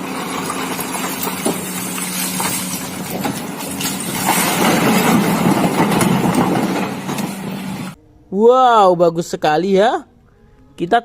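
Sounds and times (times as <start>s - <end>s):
clanking and rattling: 0.0s - 8.0s
excavator engine running: 0.0s - 8.0s.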